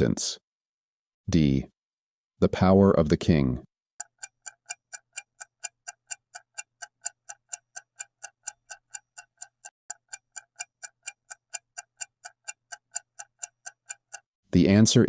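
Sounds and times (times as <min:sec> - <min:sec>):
fast clock ticking: 0:04.0 - 0:14.3.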